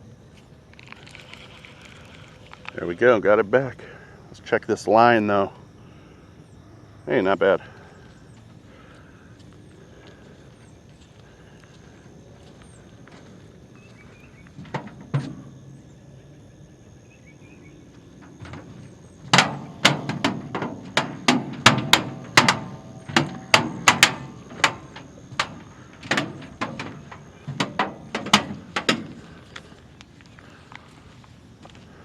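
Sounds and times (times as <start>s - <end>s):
footsteps on wooden planks: 18.4s - 32.0s.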